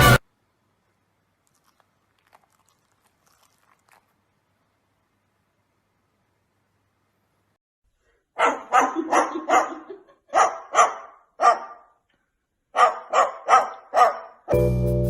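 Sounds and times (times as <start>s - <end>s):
music: 0.0s - 0.2s, 14.5s - 15.0s
dog barking: 8.4s - 12.0s, 12.7s - 14.6s.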